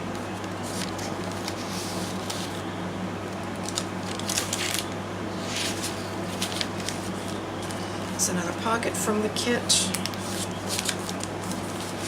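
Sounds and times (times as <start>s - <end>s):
steady low hum: 0.0s - 12.0s
paper pages rustling and crinkling: 0.2s - 2.6s, 3.4s - 8.2s, 9.9s - 12.0s.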